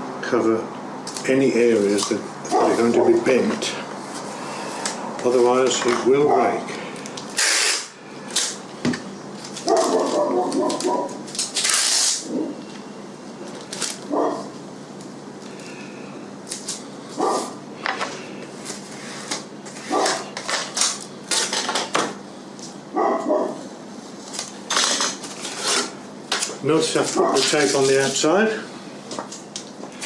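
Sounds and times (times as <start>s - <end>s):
adhesive tape pulled off roll: 7.3s - 8.6s, 9.5s - 12.3s
tape squeaks: 7.3s - 8.6s, 9.4s - 12.5s.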